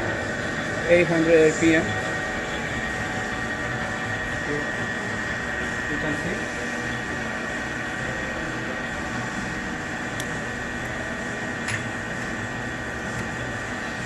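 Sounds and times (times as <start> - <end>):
lathe running with high whine: 0.0 - 14.0.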